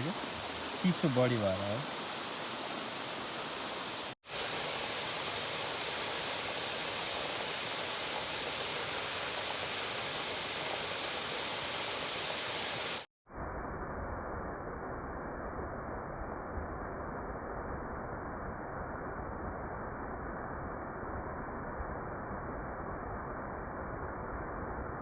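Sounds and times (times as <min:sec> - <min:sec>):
small waterfall rushing: 0:00.0 - 0:13.1.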